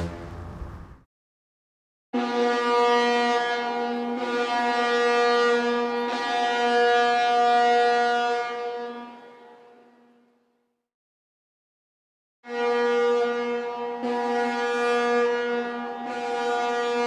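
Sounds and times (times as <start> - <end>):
ship's horn blast: 0.0 - 1.0.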